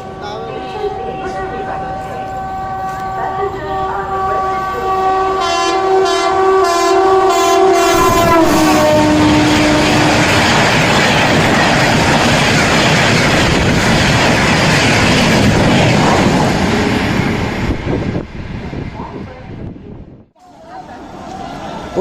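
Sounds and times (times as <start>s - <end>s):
train horn: 0.0s - 10.6s
rush of passing train coaches: 0.0s - 22.0s.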